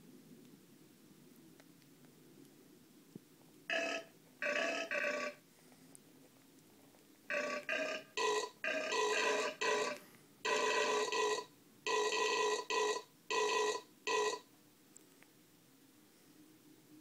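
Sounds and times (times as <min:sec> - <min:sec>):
toy piano burps: 0:03.7 - 0:05.4, 0:07.3 - 0:14.4.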